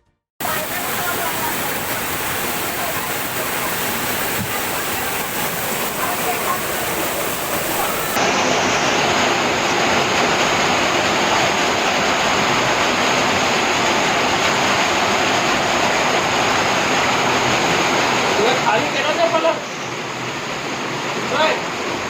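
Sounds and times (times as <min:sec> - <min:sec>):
heavy water rushing: 0:00.4 - 0:22.0.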